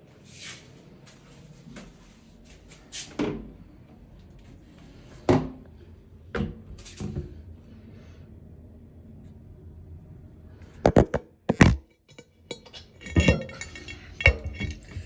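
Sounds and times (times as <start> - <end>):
hard clunks and knocks: 10.8 - 12.2.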